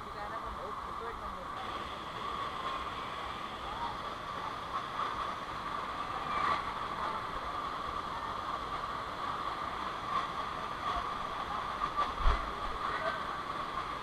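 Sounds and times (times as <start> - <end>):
waterfall rushing: 0.0 - 14.0.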